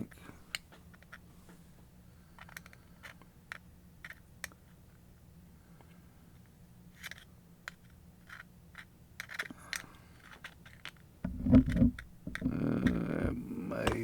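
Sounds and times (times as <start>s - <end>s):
metal parts clicking and scraping: 6.4s - 13.2s.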